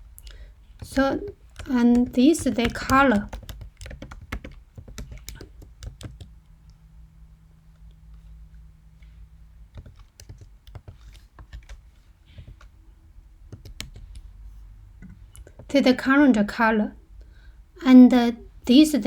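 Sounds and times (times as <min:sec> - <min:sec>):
computer keyboard typing: 0:00.2 - 0:06.5, 0:09.6 - 0:12.8, 0:13.4 - 0:14.3, 0:15.0 - 0:15.8.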